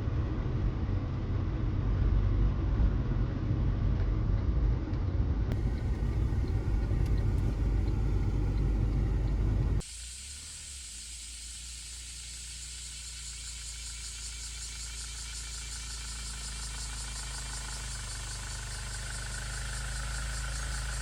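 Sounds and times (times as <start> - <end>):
vehicle low rumble: 0.5 - 9.9, 12.3 - 21.0
steady hum with hiss: 5.6 - 19.1.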